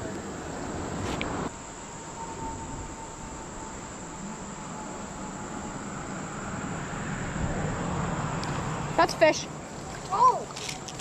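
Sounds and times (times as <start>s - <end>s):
creek water rushing: 0.0s - 11.0s
high insect trill: 0.3s - 11.0s
faint mid-pitched tone: 1.6s - 6.8s.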